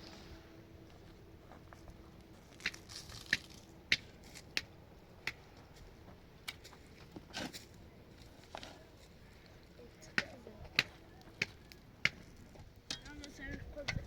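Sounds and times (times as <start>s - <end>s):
crunching: 2.4s - 4.6s.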